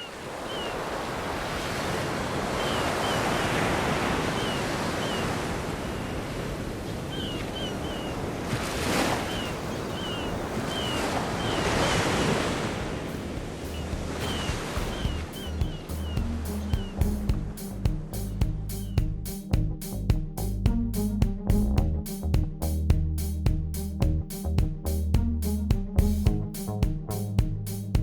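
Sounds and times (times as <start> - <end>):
sea waves washing onto shore: 0.0 - 17.1.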